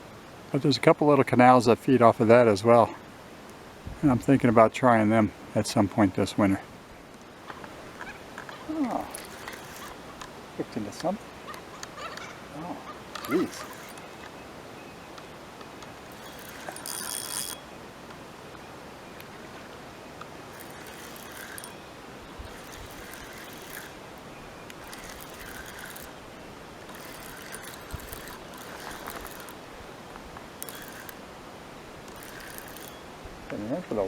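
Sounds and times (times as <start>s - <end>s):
steady outdoor hiss: 0.0s - 34.0s
fishing reel working: 8.8s - 10.0s, 13.2s - 14.0s, 16.1s - 17.6s, 20.5s - 24.0s, 24.7s - 26.2s, 26.9s - 29.6s, 30.6s - 31.2s, 32.0s - 33.1s.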